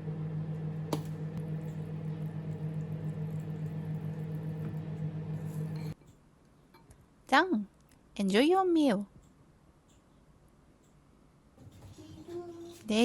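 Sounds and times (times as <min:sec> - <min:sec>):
microwave oven humming: 0:00.0 - 0:06.0.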